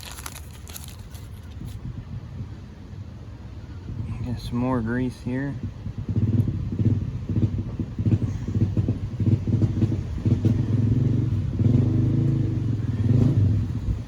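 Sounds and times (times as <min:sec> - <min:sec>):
engine running with pulsing drone: 0:05.6 - 0:14.0.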